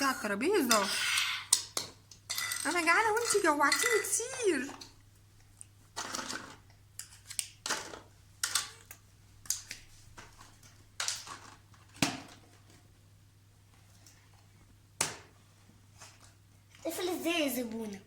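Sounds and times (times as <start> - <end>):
toy dishes clicking and knocking: 0.7 - 4.9, 6.0 - 9.7.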